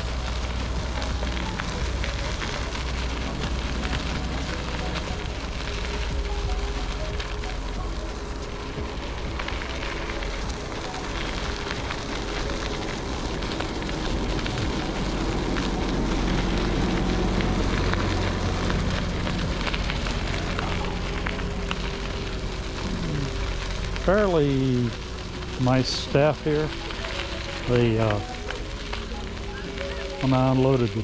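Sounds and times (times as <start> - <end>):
tyres crackling on rough surface: 0.0 - 31.0
vehicle engine drone: 0.0 - 31.0.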